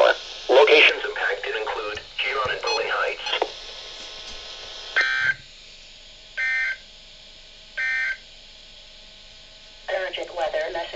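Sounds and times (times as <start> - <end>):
digital data tone bursts: 2.6 - 3.4, 6.4 - 6.8, 7.8 - 8.2.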